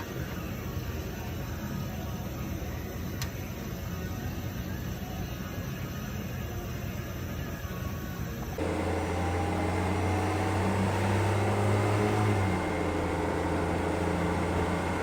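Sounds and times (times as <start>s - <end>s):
engine whine: 8.5s - 15.0s
car engine humming: 8.6s - 15.0s.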